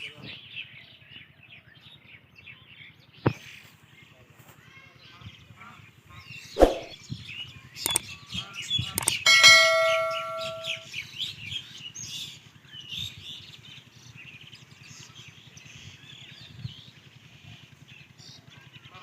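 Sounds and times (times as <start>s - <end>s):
small birds chirping: 0.0s - 19.0s
struck metal bell-like clang: 9.0s - 10.8s.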